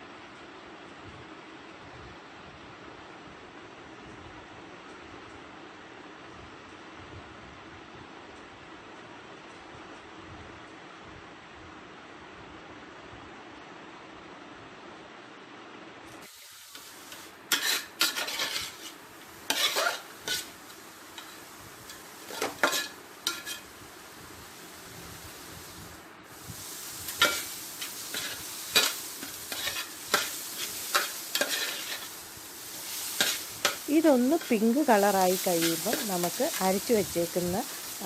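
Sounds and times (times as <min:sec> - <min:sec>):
onions sizzling in oil: 0:16.1 - 0:38.0
spoon scraping a pan: 0:16.7 - 0:23.8, 0:26.6 - 0:38.0.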